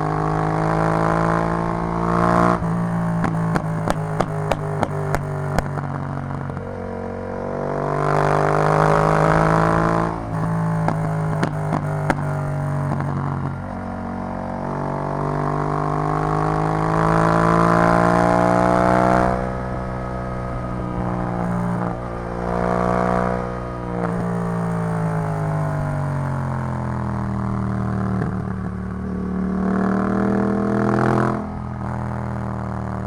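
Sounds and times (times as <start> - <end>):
motorcycle engine revving: 0.0 - 33.0
exhaust crackling and popping: 2.5 - 6.7, 10.2 - 13.8, 20.8 - 22.2, 24.0 - 28.9.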